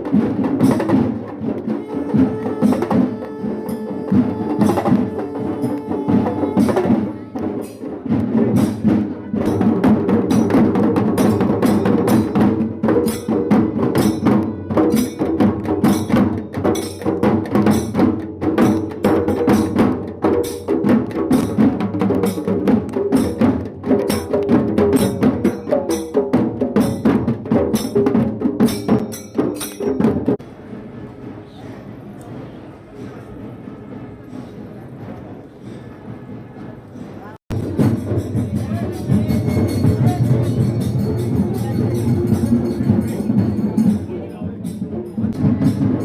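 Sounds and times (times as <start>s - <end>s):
wood-block strikes: 0.0s - 30.4s, 37.0s - 46.0s.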